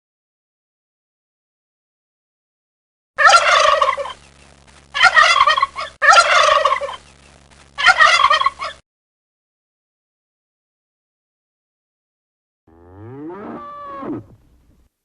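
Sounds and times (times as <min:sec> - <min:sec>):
turkey gobbling: 0:03.2 - 0:04.2, 0:05.0 - 0:07.0, 0:07.8 - 0:08.8.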